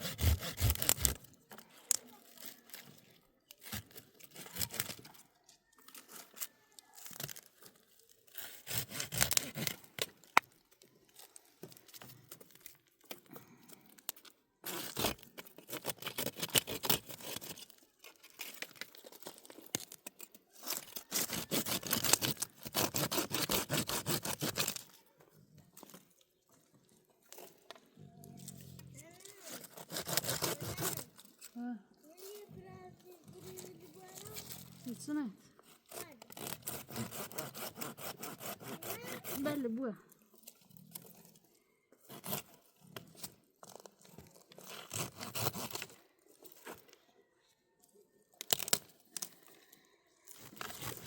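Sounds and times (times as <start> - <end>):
rough rasping strokes: 0.0 - 1.3, 8.3 - 10.4, 20.6 - 24.8, 28.3 - 31.6, 33.1 - 39.8.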